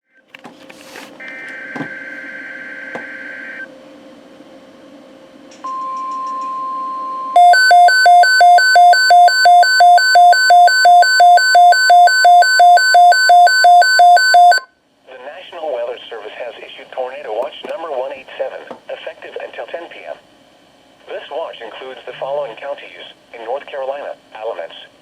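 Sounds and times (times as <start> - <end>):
steady warning alarm tone: 6.8 - 14.7
repeating electronic beeping: 7.4 - 14.6.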